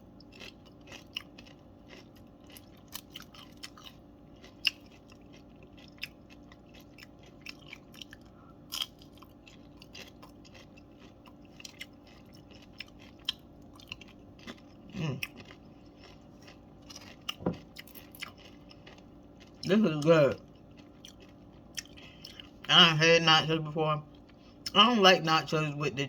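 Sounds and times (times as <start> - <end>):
person crunching chips: 0.2 - 25.8.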